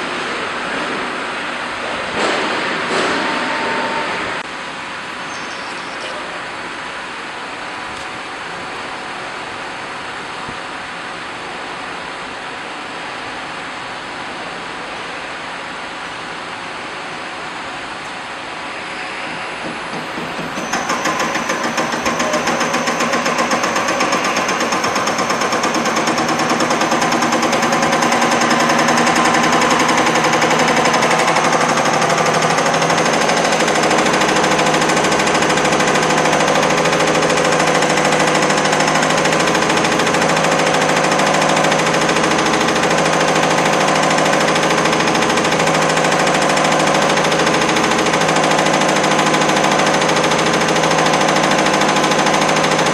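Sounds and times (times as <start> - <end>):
steady machine hum: 0.0 - 52.9
test bench mechanical clatter: 19.3 - 52.9.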